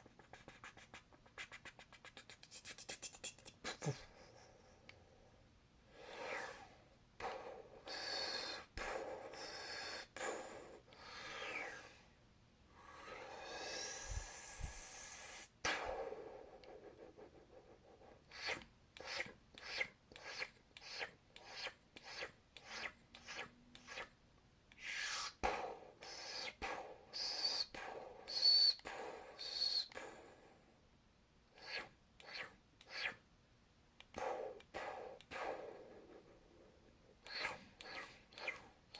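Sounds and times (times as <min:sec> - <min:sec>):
whistly zaps: 0:27.2 - 0:30.0.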